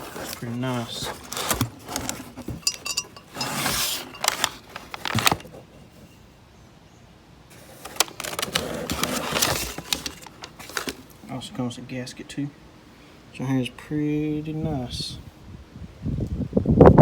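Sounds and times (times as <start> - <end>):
packaging crinkling: 0.0 - 5.6, 7.5 - 11.2.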